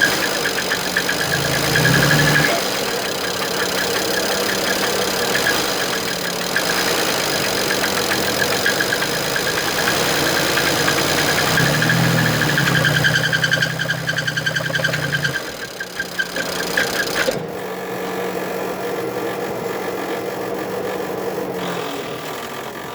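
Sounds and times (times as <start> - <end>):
engine bearing knocking: 0.0 - 17.4
engine hiss: 0.0 - 17.4
car engine running: 0.0 - 22.9.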